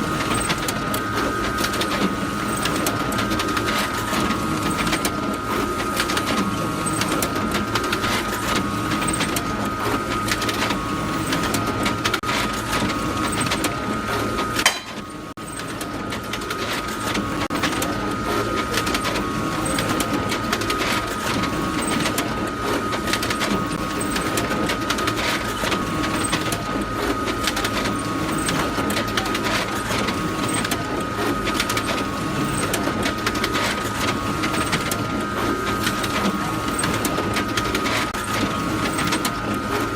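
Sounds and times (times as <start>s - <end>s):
photocopier running: 0.0s - 39.9s.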